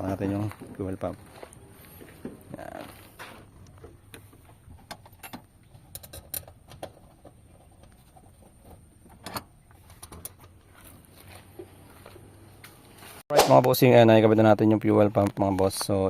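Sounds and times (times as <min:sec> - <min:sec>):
tools and metal parts clicking: 0:04.8 - 0:10.6.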